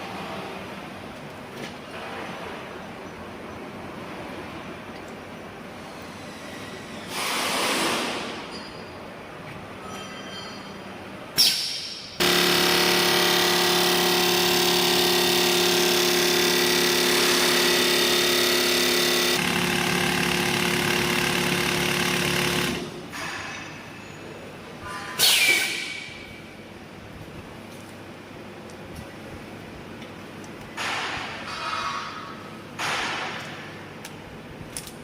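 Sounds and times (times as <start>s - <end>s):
filling machine humming: 12.2s - 22.9s
machine clunk: 30.8s - 33.8s.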